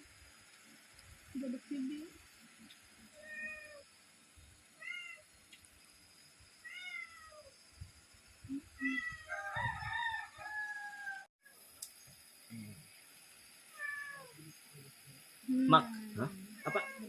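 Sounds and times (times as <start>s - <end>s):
cat meowing: 3.2s - 3.8s, 6.7s - 7.5s, 16.6s - 17.0s.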